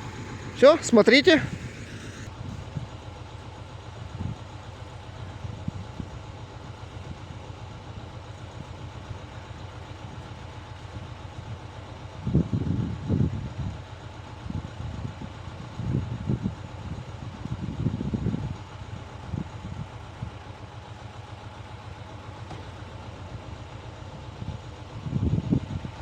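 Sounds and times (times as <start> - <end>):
rotary tiller engine running: 0.0 - 2.3.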